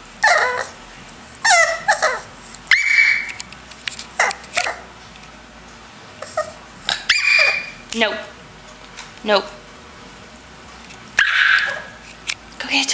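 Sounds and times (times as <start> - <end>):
dog whining and yelping: 0.2 - 0.8, 1.4 - 3.5, 6.2 - 7.8, 11.2 - 12.0.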